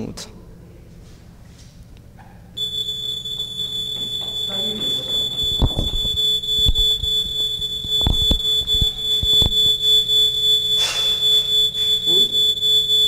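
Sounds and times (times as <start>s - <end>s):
smoke alarm high-pitched tone: 2.6s - 13.0s.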